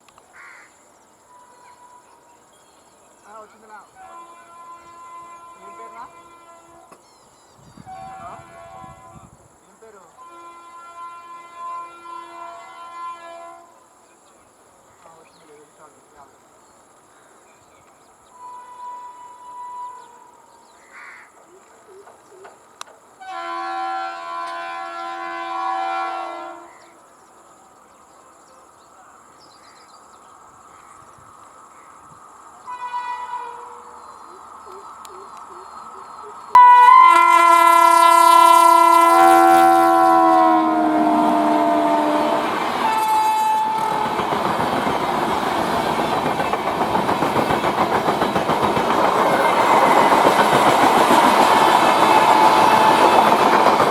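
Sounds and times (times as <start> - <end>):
locomotive horn blasts: 3.9 - 6.9, 7.8 - 9.4, 10.2 - 13.8, 18.3 - 20.4, 23.2 - 26.8, 32.6 - 33.9, 36.6 - 44.6, 51.8 - 53.7
train wheels clattering over rail joints: 42.4 - 53.9.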